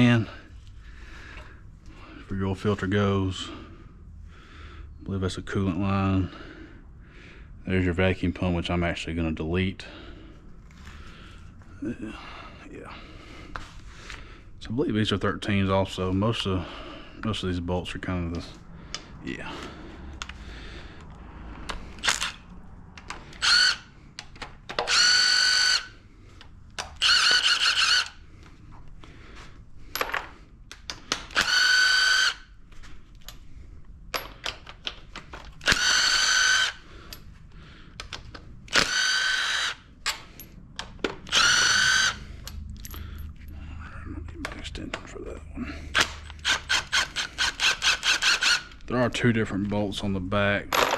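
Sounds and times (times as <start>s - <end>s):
impact wrench whining: 21.7s - 28.4s, 30.8s - 32.6s, 35.5s - 37.3s, 37.9s - 43.1s, 45.8s - 48.8s.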